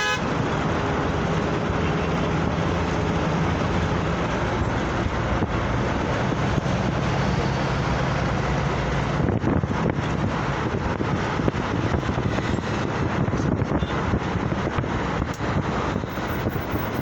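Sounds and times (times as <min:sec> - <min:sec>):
low engine drone: 0:00.0 - 0:13.4
tyre and wind rush: 0:02.4 - 0:17.0.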